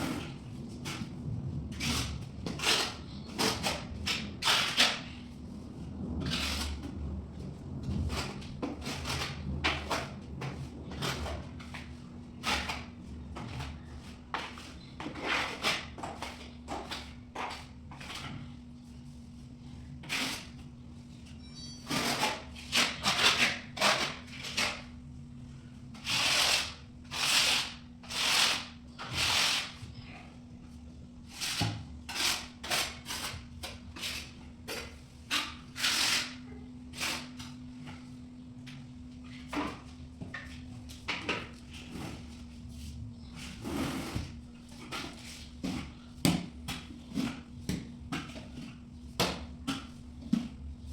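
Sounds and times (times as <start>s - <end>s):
steady low hum: 0.0s - 50.9s
hand tool scraping hard surface: 26.0s - 30.2s, 31.3s - 36.4s, 43.4s - 47.5s.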